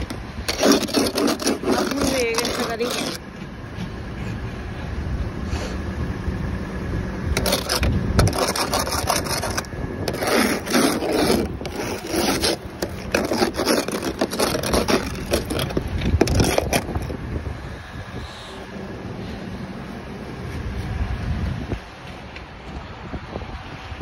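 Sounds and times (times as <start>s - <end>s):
ice scraping off car: 0.0s - 3.2s, 7.4s - 17.2s.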